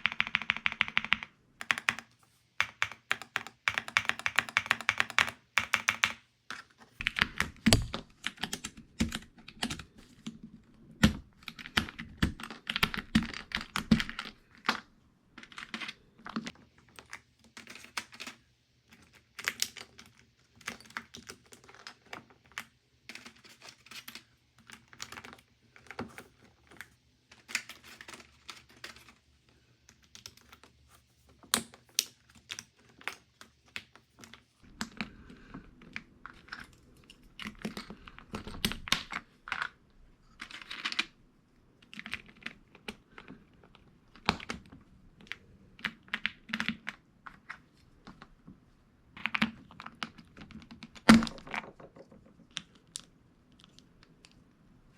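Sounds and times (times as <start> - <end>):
mechanical keyboard typing: 0.0 - 6.3, 7.0 - 16.0.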